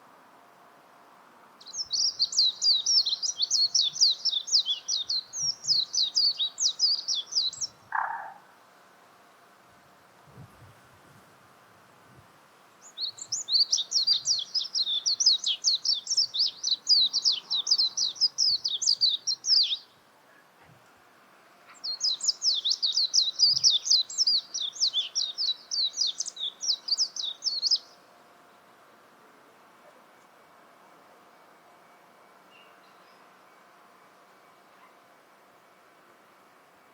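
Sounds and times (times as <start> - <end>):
bird twittering song: 1.6 - 8.4, 12.8 - 20.0, 21.7 - 28.0.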